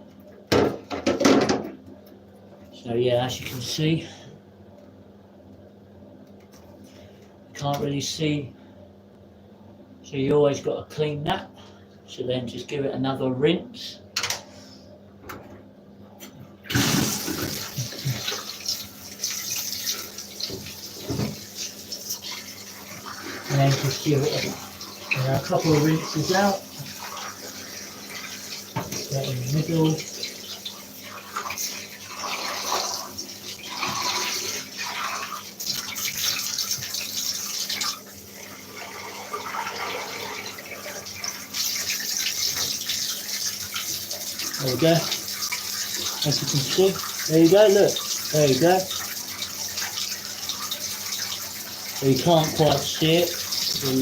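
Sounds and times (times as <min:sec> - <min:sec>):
tap water splashing into a bath: 0:16.7 - 0:54.0.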